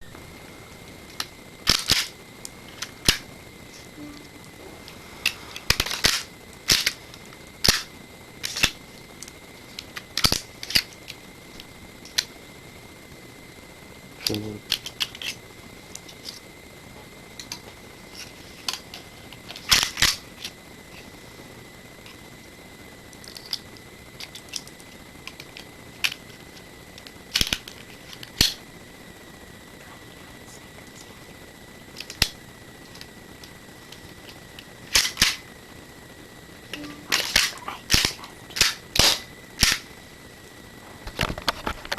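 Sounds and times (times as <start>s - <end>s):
pistol mechanism clicks: 34.9s - 35.4s, 36.8s - 39.8s.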